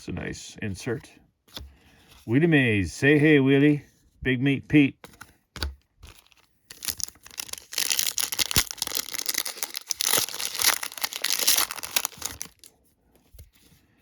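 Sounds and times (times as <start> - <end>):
foil wrapper tearing and crinkling: 6.0 - 12.7.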